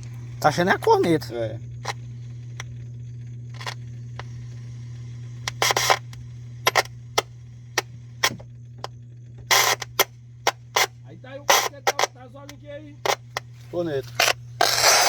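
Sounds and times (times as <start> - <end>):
speaker low hum: 0.0 - 15.0
speaker pops and clicks: 5.5 - 10.9, 11.5 - 13.5.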